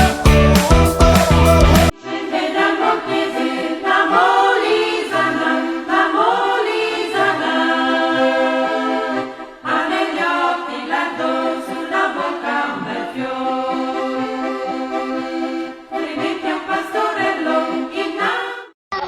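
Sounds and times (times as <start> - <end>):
music with held chords: 0.0 - 1.9.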